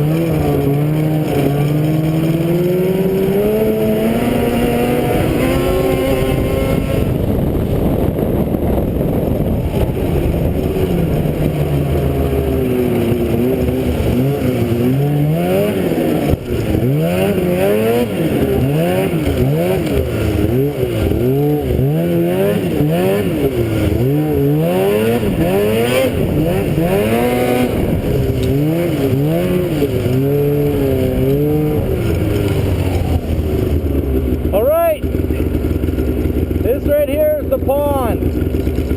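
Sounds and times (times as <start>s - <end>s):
snowmobile engine revving: 0.0s - 38.9s.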